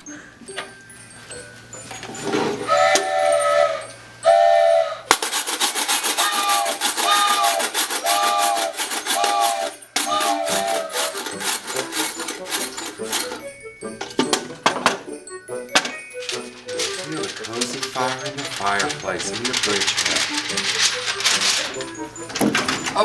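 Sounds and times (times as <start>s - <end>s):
rapid rasping chatter: 5.1s - 13.4s, 16.2s - 23.0s.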